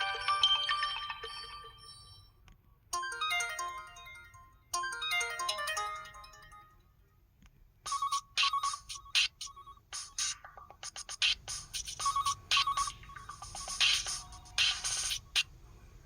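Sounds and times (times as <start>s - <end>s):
buzzy electronic beats ringtone: 0.0s - 2.2s, 7.9s - 15.5s
tinkling synthesized ringtone: 0.0s - 2.4s, 3.0s - 7.0s, 7.9s - 10.7s, 12.0s - 15.1s.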